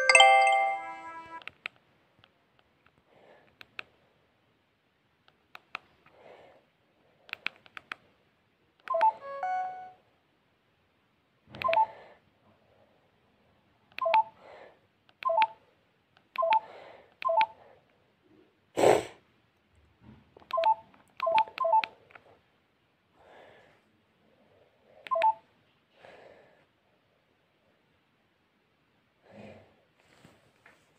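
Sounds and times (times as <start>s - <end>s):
phone keypad beeps: 8.8s - 10.0s, 11.6s - 12.0s, 14.0s - 14.4s, 15.2s - 15.6s, 16.4s - 17.6s, 20.4s - 22.0s, 25.1s - 25.4s.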